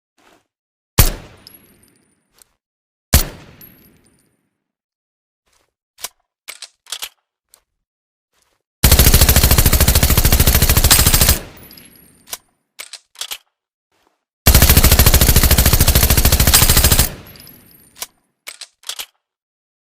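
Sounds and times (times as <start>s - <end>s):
machine pistol firing bursts: 8.8s - 11.8s, 14.5s - 17.8s.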